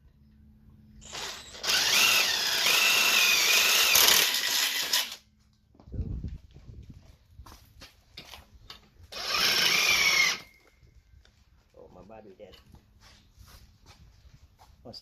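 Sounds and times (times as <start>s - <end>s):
power drill boring through steel: 1.0s - 5.2s, 9.1s - 10.6s.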